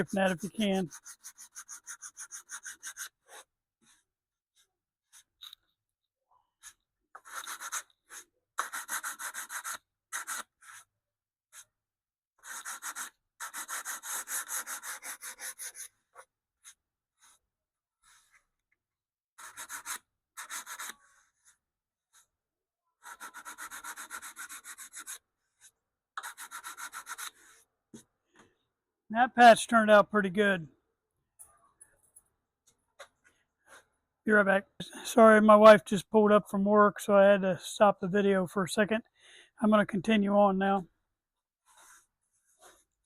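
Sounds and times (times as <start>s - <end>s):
sandpaper strokes on wood: 0.0s - 3.4s, 12.5s - 15.9s, 23.1s - 25.2s, 26.2s - 27.5s.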